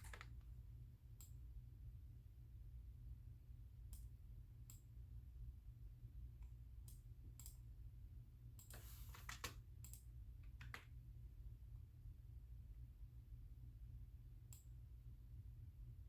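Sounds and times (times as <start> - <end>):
computer keys and mouse clicking: 6.4 - 7.6, 8.6 - 11.0.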